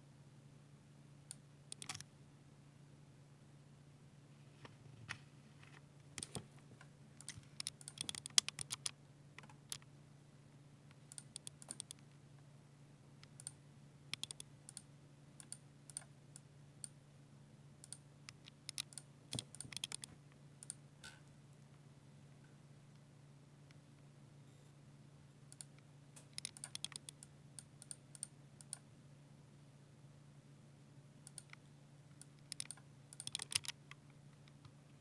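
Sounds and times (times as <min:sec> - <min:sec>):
mechanical keyboard typing: 0:01.7 - 0:02.0, 0:07.2 - 0:09.0, 0:11.1 - 0:12.0, 0:14.2 - 0:14.8, 0:17.8 - 0:20.8, 0:26.3 - 0:28.8, 0:32.2 - 0:33.8.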